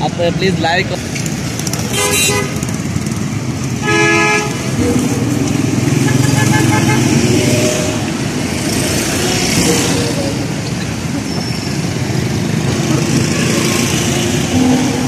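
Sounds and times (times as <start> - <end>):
busy road traffic: 0.0 - 15.0
vehicle horn honking: 1.9 - 2.6, 3.8 - 4.6, 6.0 - 8.1.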